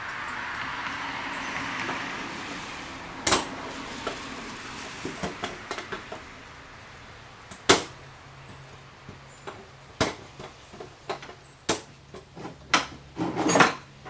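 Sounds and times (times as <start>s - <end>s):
soft hiss: 0.0s - 10.9s.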